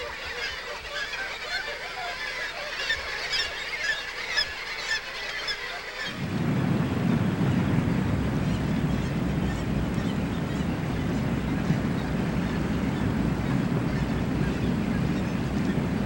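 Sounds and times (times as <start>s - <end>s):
birds honking and squawking: 0.0s - 6.4s, 7.2s - 16.0s
low rushing noise: 6.2s - 16.0s.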